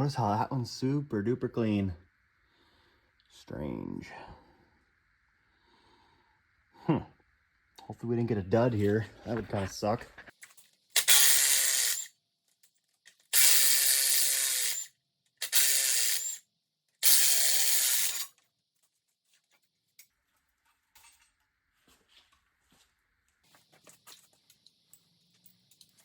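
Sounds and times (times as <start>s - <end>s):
cordless drill whirring: 11.0s - 12.1s, 13.3s - 16.4s, 17.0s - 18.3s.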